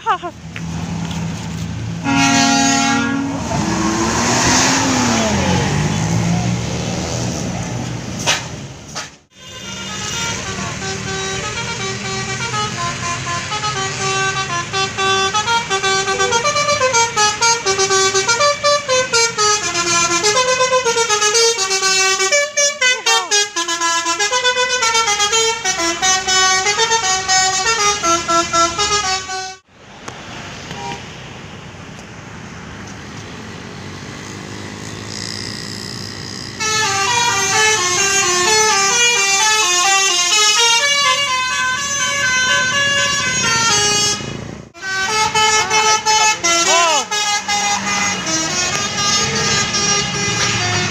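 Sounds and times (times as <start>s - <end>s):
traffic noise: 0.0s - 50.9s
multi-tone bus air horn tune: 2.0s - 3.5s, 8.2s - 29.7s, 35.2s - 50.9s.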